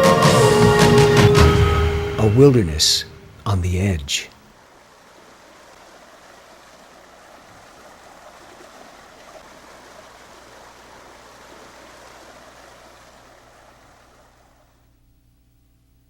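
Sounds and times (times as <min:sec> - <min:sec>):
rushing water: 0:00.0 - 0:14.9.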